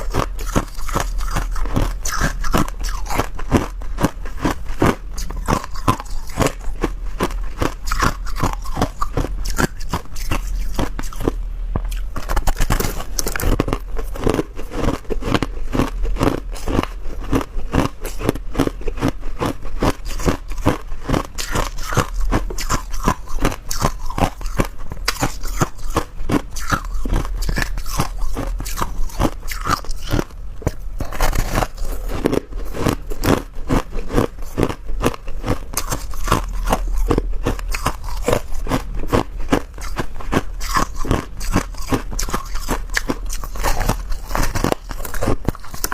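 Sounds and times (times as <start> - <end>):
person chewing ice: 0.0 - 45.9
steady low hum: 0.0 - 45.9.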